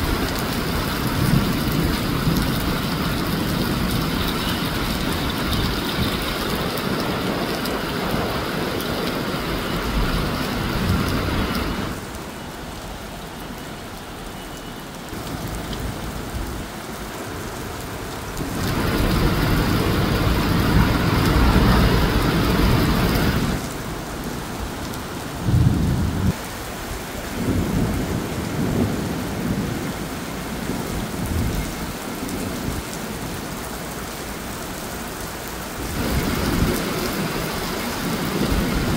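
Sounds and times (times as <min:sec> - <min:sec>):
steady rain: 0:00.0 - 0:38.9
rolling thunder: 0:18.4 - 0:23.8, 0:25.4 - 0:26.4, 0:27.2 - 0:32.9, 0:35.8 - 0:38.9.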